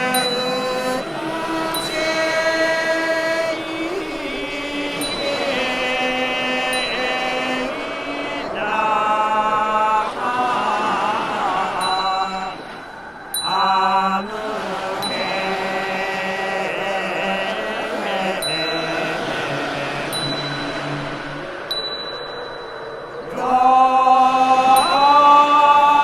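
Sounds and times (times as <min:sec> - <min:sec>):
hymn chanted in held notes: 0:00.0 - 0:12.7, 0:13.4 - 0:21.6, 0:23.2 - 0:26.0.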